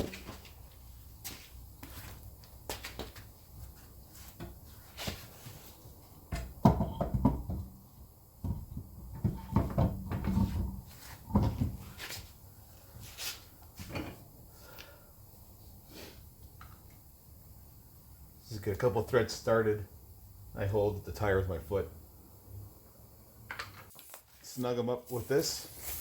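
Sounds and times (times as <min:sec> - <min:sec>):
metal clunks and knocks: 0:06.3 - 0:07.8, 0:08.4 - 0:12.0.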